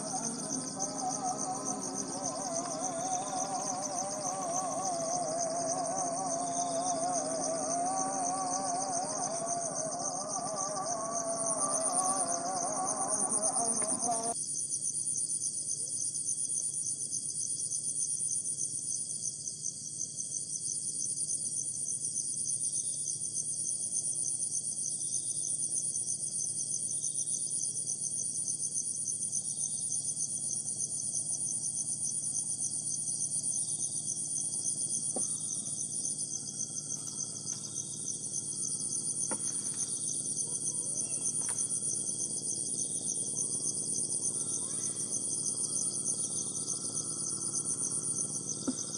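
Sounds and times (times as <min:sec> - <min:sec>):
faint tone: 0:00.0 - 0:14.4
insects trilling: 0:00.0 - 0:14.4, 0:31.4 - 0:48.9.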